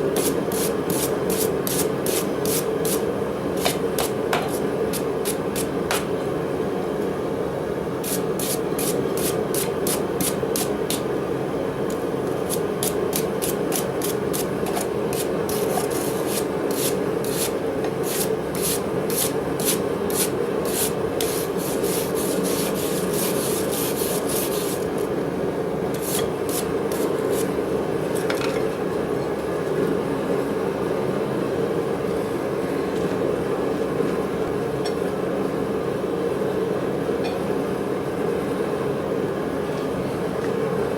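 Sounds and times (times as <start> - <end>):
rapid scraping strokes: 15.1 - 25.0, 26.0 - 27.5.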